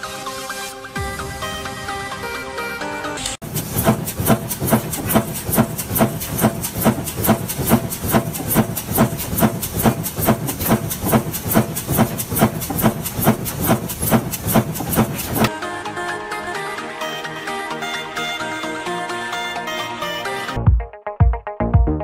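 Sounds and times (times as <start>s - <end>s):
rapid evenly spaced strikes: 1.0s - 15.5s.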